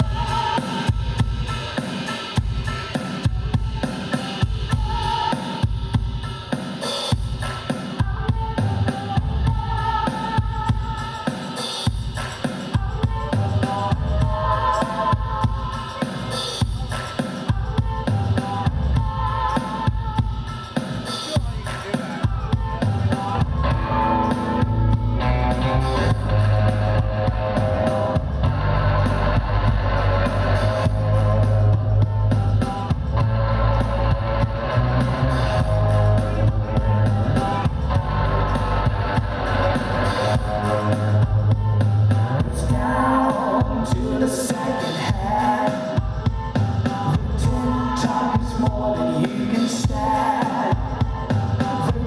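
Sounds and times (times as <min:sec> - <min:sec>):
drum kit: 0:00.0 - 0:52.0
guitar: 0:00.0 - 0:52.0
held low bass note: 0:23.5 - 0:40.2.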